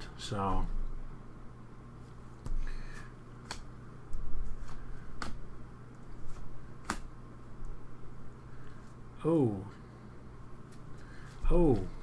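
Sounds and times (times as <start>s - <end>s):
sharp card clicks: 3.4s - 3.7s, 6.3s - 7.1s.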